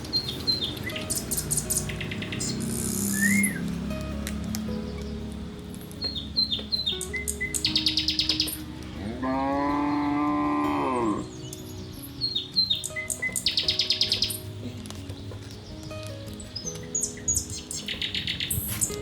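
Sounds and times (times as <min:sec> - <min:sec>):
bird chirps and trills: 0:00.0 - 0:19.0
soft background music: 0:00.0 - 0:19.0
cow mooing: 0:09.0 - 0:11.3.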